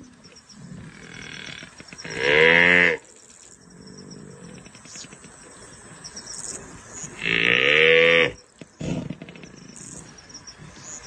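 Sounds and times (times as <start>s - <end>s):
moo-like animal call: 0.6s - 3.1s, 7.0s - 9.8s.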